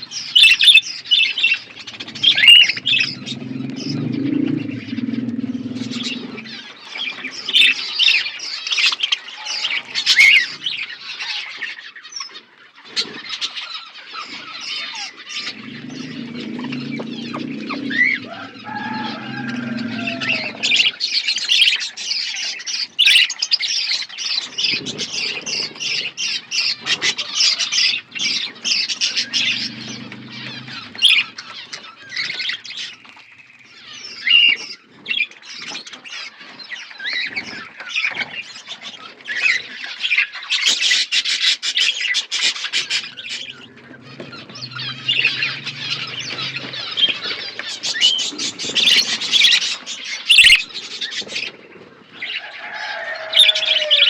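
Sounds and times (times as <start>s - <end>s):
budgerigars chattering: 0.0s - 54.0s.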